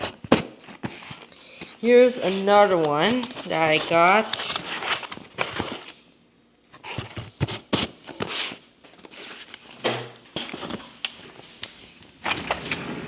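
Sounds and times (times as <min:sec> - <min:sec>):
plastic packaging crinkling: 0:00.0 - 0:06.1.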